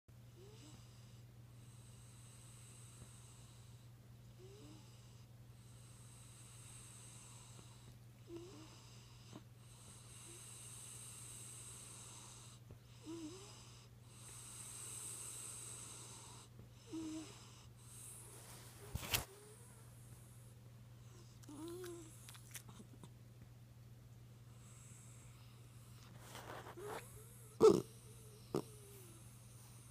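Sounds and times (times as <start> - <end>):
dog snoring: 0.4 - 3.6, 4.4 - 18.3, 21.0 - 22.6, 24.6 - 29.9.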